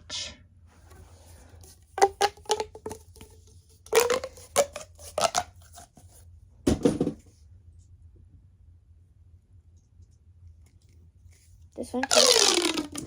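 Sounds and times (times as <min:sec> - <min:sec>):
plastic toys clacking together: 0:12.0 - 0:13.0.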